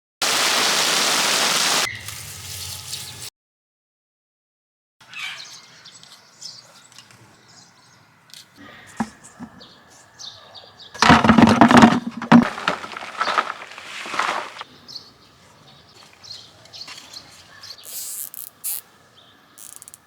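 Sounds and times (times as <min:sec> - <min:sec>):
small birds chirping: 0:05.1 - 0:11.0, 0:12.6 - 0:20.0
loud noisy rustle: 0:11.0 - 0:14.6.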